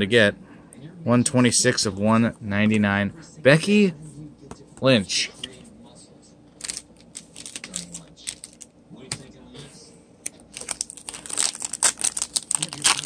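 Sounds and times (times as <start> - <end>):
trading cards clicking and rustling: 6.6 - 9.2.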